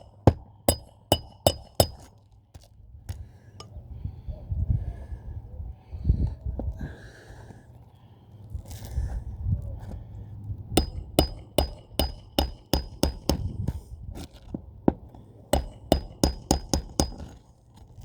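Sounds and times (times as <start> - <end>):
tool striking metal: 0.0 - 2.1, 10.8 - 13.6, 15.6 - 17.3.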